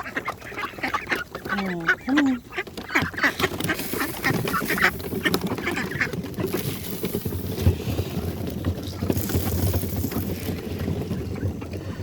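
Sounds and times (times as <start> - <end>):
ducks quacking: 0.0 - 6.8.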